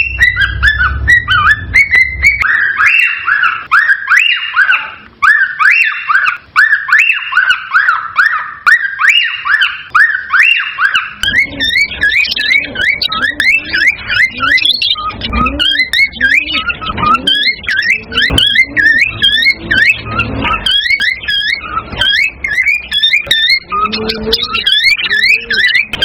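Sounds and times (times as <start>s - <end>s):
low sound beneath whistling: 0.0s - 3.7s, 9.9s - 26.0s
cockatiel whistling: 0.0s - 26.0s.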